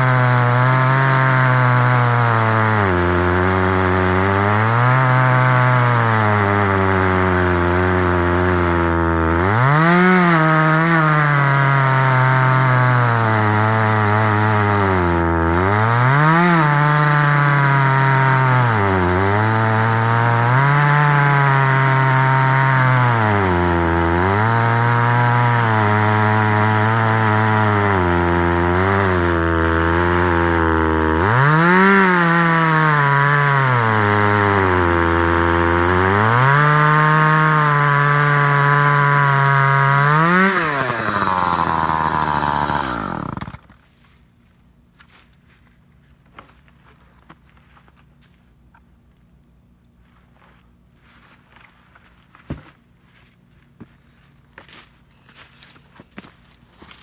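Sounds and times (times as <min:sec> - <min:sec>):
chainsaw cutting under load: 0:00.0 - 0:43.9.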